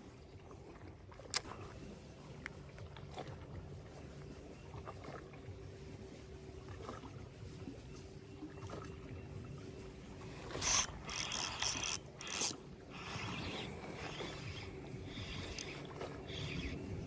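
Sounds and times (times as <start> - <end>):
fishing reel whirring and clicking: 10.3 - 17.0.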